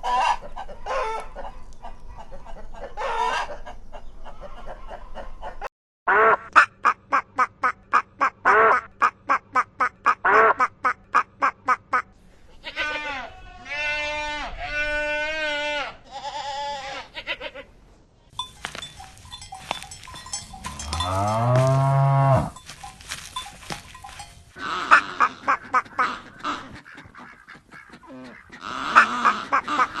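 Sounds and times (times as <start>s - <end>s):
goat bleating: 12.6s - 17.7s
bell clanking: 18.4s - 24.6s
cow mooing: 20.3s - 22.8s.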